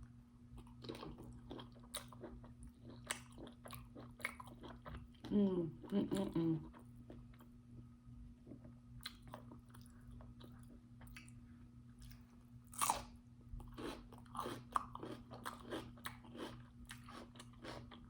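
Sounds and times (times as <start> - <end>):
faint steady hum: 0.0 - 18.0
crunching and chewing: 0.5 - 5.3, 8.4 - 11.4, 12.0 - 18.0
biting into crunchy food: 12.0 - 13.1.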